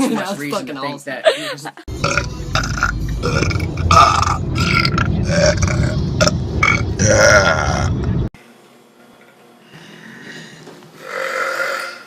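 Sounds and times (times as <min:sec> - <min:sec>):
long loud belch: 0:01.9 - 0:08.1.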